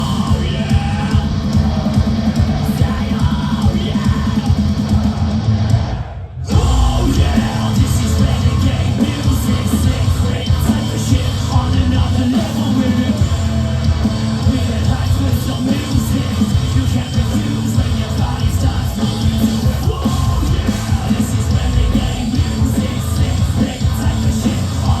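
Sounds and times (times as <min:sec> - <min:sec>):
live rock band playing: 0:00.0 - 0:05.9, 0:06.5 - 0:25.0.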